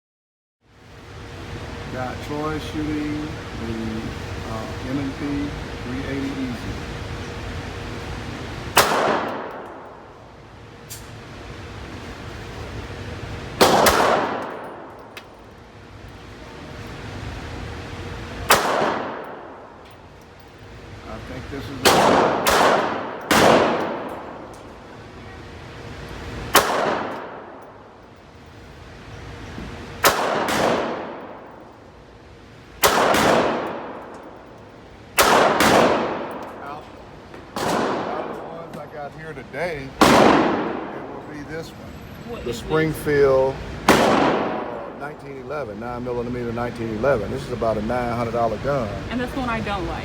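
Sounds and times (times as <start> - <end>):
pistol shots echoing: 8.8 - 10.0, 13.6 - 15.0, 18.4 - 19.7, 21.8 - 24.5, 26.5 - 27.8, 30.0 - 31.6, 32.8 - 34.2, 35.2 - 36.6, 37.5 - 38.5, 40.0 - 41.2, 43.8 - 45.0.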